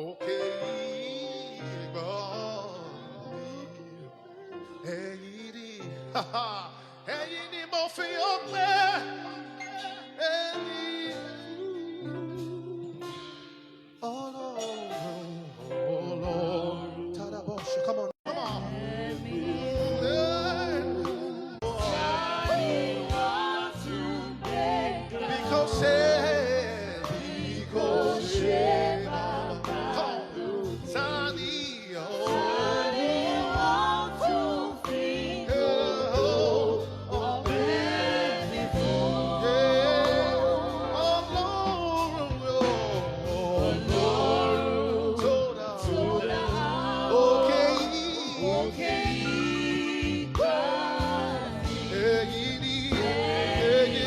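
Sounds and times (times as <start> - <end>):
gospel singing: 0.0 - 54.0
instrumental accompaniment: 8.4 - 54.0.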